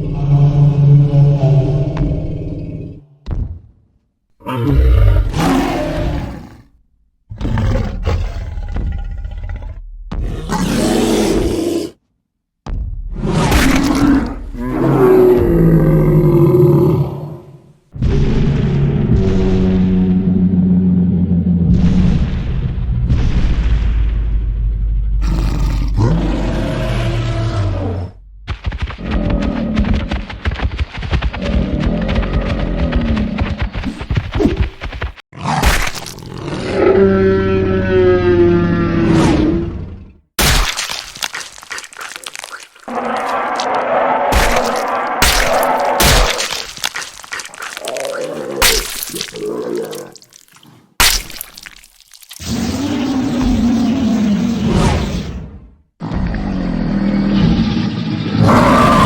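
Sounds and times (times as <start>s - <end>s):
creature roaring: 4.4s - 6.7s, 7.4s - 12.0s, 13.2s - 17.6s, 25.2s - 28.2s, 36.3s - 39.9s, 40.8s - 55.3s, 56.0s - 59.0s.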